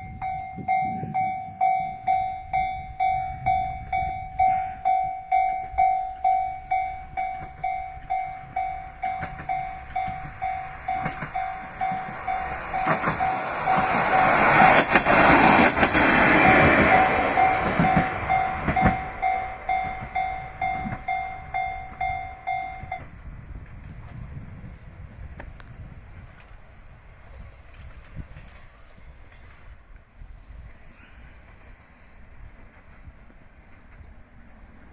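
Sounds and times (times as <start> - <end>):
level crossing bell dinging: 0.0 - 14.0, 16.9 - 23.0
diesel railcar passing: 0.0 - 34.9
train wheel clicks over rail joints: 5.4 - 21.2.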